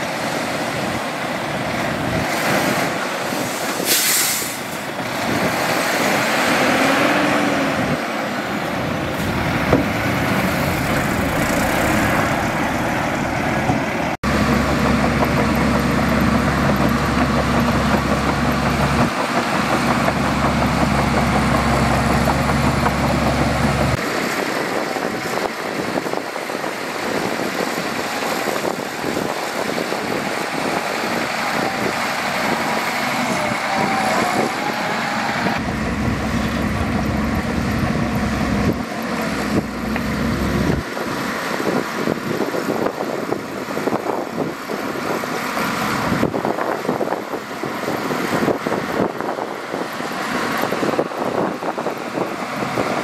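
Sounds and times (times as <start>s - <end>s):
heavy diesel engines working: 0.0s - 53.0s
air hiss: 3.4s - 4.8s
low engine drone: 6.4s - 25.2s, 28.6s - 42.1s.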